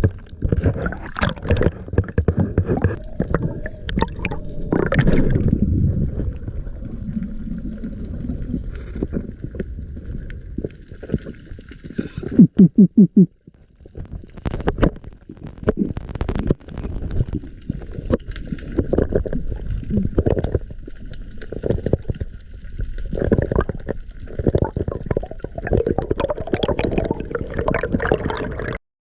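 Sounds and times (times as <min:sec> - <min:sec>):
small underwater clicks and knocks: 0:00.0 - 0:05.4, 0:13.6 - 0:27.9
low underwater rumble: 0:00.0 - 0:11.3
underwater bubbling and gurgling: 0:00.0 - 0:28.8.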